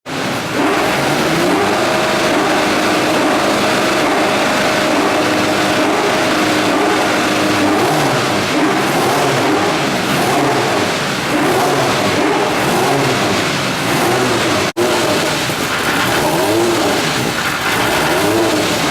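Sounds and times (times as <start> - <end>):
race car engine running: 0.0 - 18.9.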